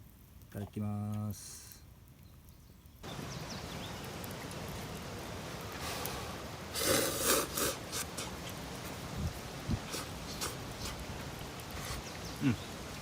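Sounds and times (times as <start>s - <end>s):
steady hiss: 0.0s - 13.0s
noodles being slurped: 6.8s - 8.4s, 9.8s - 11.0s.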